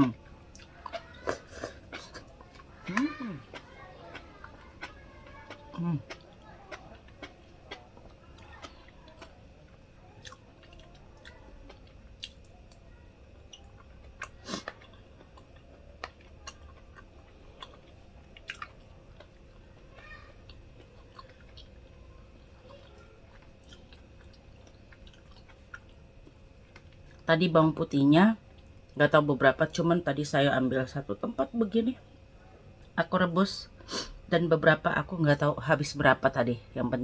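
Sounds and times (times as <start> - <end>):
person chewing: 0.0 - 27.2.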